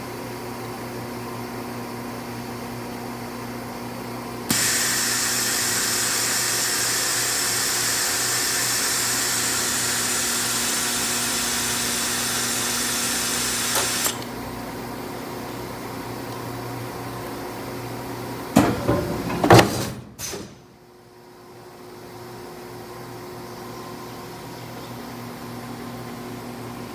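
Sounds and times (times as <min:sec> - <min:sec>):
mechanical arm motor running: 0:04.5 - 0:14.3
loud knocks and handling noises: 0:18.6 - 0:20.6.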